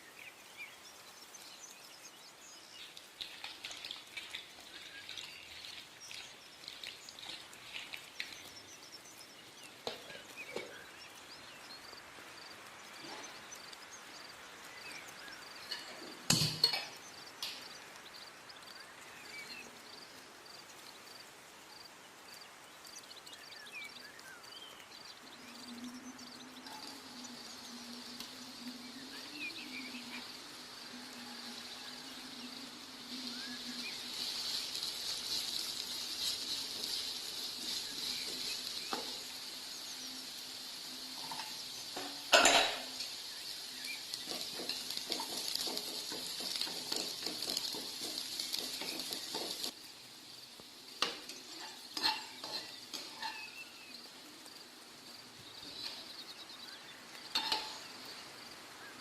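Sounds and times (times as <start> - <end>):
food sizzling in a pan: 0.0 - 59.0
utensil clanking on pan: 15.6 - 17.0, 41.1 - 43.2, 44.0 - 49.7, 51.0 - 53.5, 57.3 - 57.9
spoon stirring: 51.3 - 53.5.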